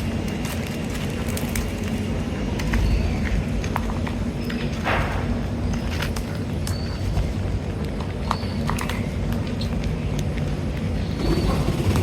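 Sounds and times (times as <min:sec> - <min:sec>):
steady low rumble: 0:00.0 - 0:12.0
rush of noise: 0:11.1 - 0:12.0.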